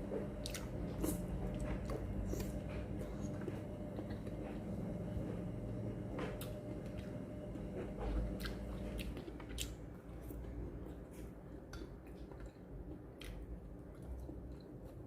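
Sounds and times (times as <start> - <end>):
person chewing food: 0.0 - 4.8, 7.8 - 15.0.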